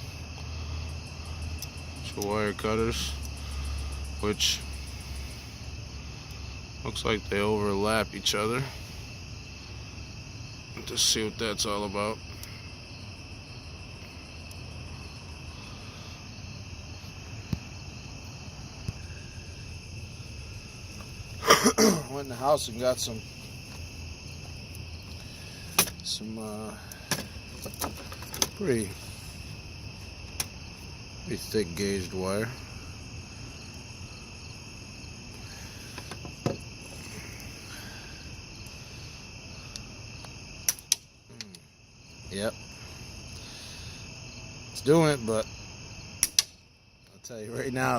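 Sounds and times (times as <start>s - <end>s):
crickets chirring: 0.0s - 47.9s
sharp clicks: 39.7s - 41.6s, 46.2s - 46.6s.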